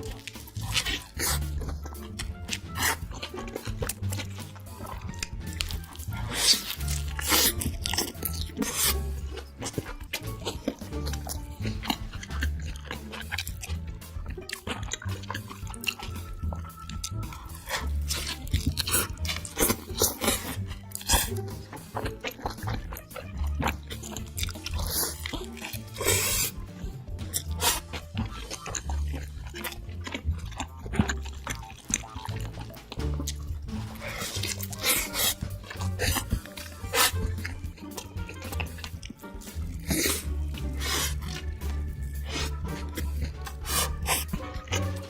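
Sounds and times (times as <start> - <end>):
chewing and crunching food: 0.0 - 45.0
music with deep bass beat: 0.0 - 45.0.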